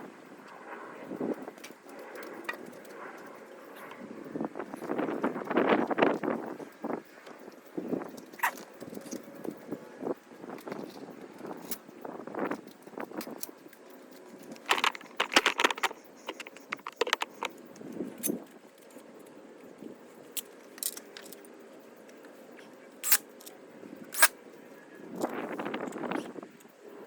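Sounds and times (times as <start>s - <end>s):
small hard objects clinking: 14.6s - 17.5s
sharp clicks: 14.6s - 17.6s.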